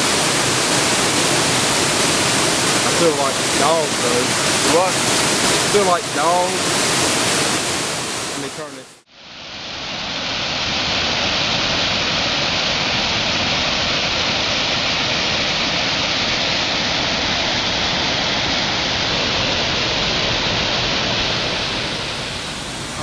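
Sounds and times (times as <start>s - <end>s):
waterfall roar: 0.0s - 9.0s, 21.3s - 23.0s.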